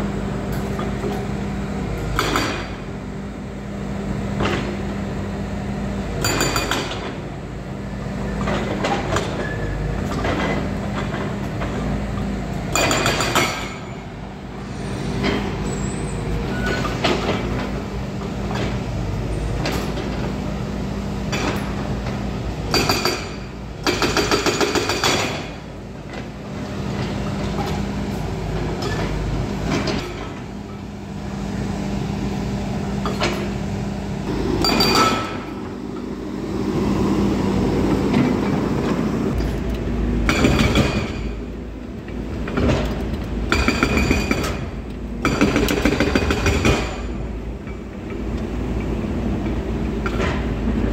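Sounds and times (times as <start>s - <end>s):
excavator diesel engine running: 33.7s - 50.9s.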